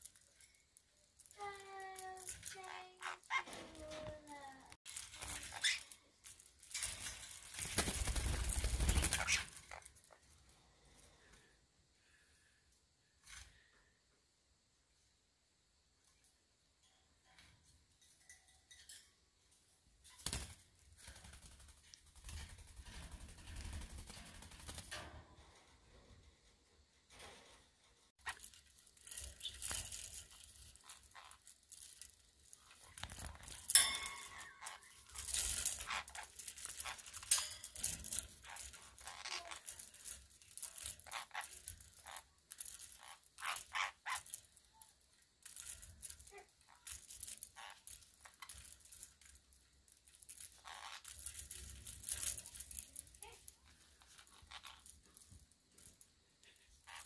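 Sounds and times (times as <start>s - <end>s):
parrot toy clicking and scraping: 0.0s - 10.3s, 28.2s - 57.0s.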